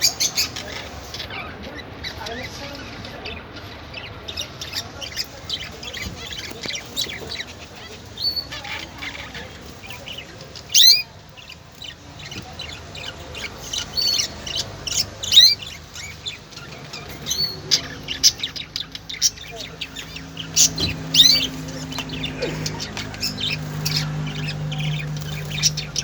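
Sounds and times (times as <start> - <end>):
songbirds chirping: 0.0 - 26.0
bird call rising in pitch: 10.8 - 11.0.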